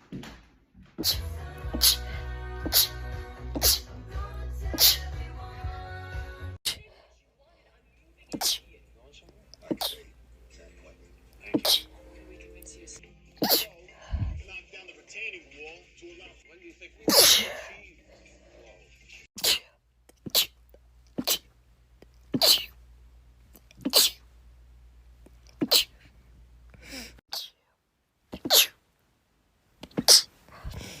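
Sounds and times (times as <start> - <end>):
person sneezing: 1.0 - 4.0, 4.7 - 5.1, 8.3 - 8.6, 9.7 - 10.1, 11.5 - 11.9, 13.4 - 13.8, 17.1 - 17.7, 19.4 - 20.6, 21.2 - 21.5, 22.3 - 22.8, 23.8 - 24.2, 25.5 - 26.0, 26.8 - 27.6, 28.3 - 28.8, 29.8 - 31.0.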